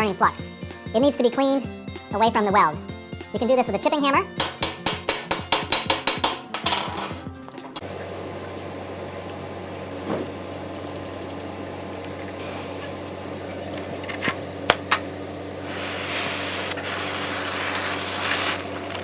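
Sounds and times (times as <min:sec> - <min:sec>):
hammer tapping on weld slag: 0:04.4 - 0:06.6
machine hum: 0:07.8 - 0:19.0
scratchy hiss: 0:15.6 - 0:19.0.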